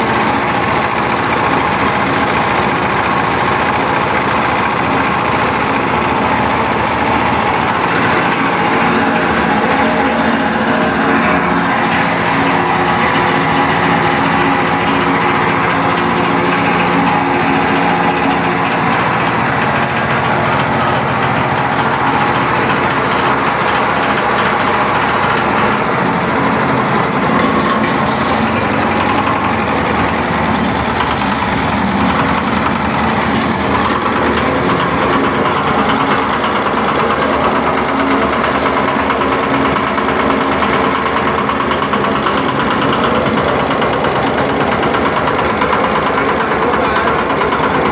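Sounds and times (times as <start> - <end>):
concrete mixer engine running: 0.0 - 47.9.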